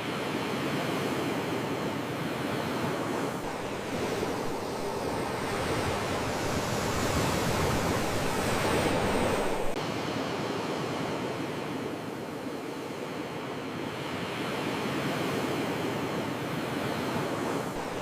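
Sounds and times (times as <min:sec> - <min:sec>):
ocean waves washing on shore: 0:00.0 - 0:18.0.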